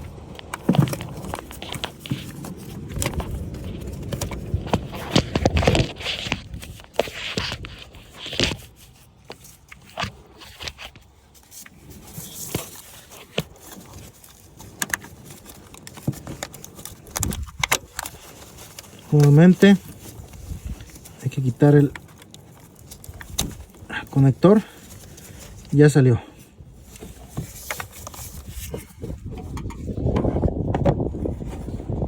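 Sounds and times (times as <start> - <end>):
hand scraping and rustling on engine: 0.0 - 32.0.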